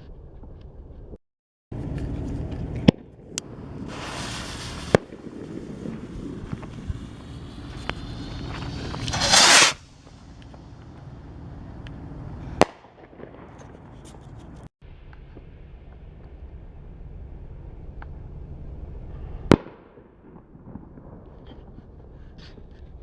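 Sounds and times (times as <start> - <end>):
sharp firework bangs: 1.8 - 14.3
firework rockets whooshing: 1.8 - 14.7
small firework pops: 1.8 - 15.5.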